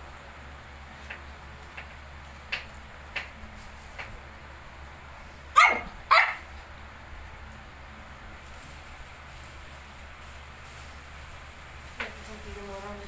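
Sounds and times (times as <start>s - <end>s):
dog barking: 5.6s - 6.5s
high yips: 5.6s - 6.5s.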